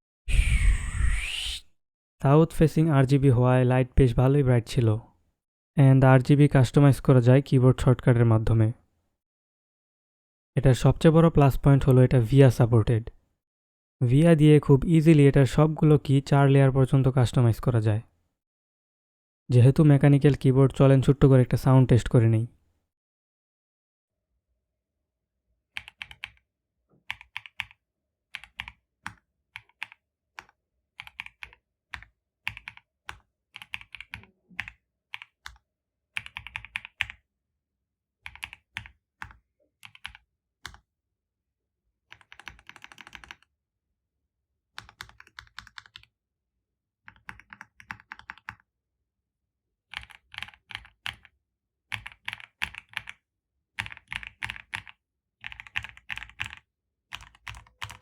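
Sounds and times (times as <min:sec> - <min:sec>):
mechanical keyboard keys clacking: 0:39.8 - 0:40.8, 0:42.1 - 0:43.4, 0:55.5 - 0:58.0.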